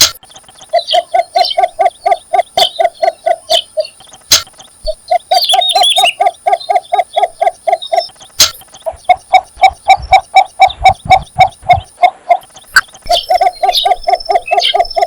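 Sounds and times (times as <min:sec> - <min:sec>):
sharp click: 0:00.0 - 0:00.4, 0:04.0 - 0:05.0, 0:08.3 - 0:08.8
bird repeating low note: 0:00.0 - 0:15.0
faint high whine: 0:00.0 - 0:15.0
high squeaky bird chirps: 0:00.0 - 0:15.0.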